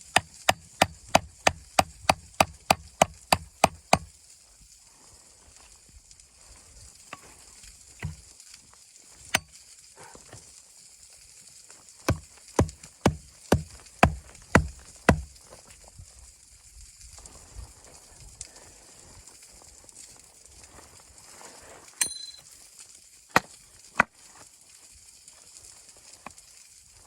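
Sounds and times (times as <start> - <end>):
axe chopping wood: 0.0 - 4.1, 8.0 - 8.3, 12.1 - 15.4, 23.3 - 24.1.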